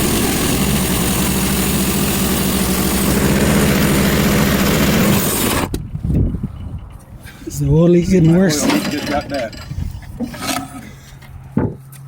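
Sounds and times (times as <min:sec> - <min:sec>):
sawmill engine running: 0:00.0 - 0:05.8.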